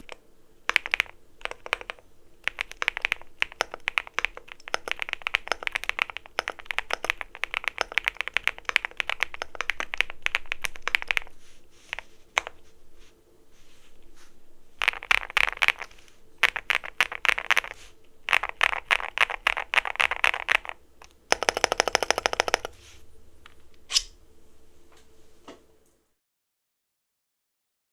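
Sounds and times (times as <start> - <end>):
mechanical keyboard typing: 0.0 - 11.3, 14.8 - 22.8.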